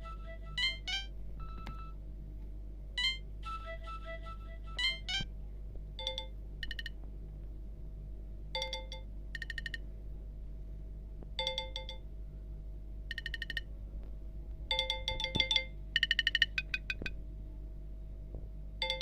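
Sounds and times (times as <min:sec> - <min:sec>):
electronic notes: 0:00.0 - 0:02.0, 0:03.0 - 0:05.2
trilling electronic chirps: 0:00.0 - 0:02.0, 0:03.0 - 0:04.0, 0:04.7 - 0:05.2.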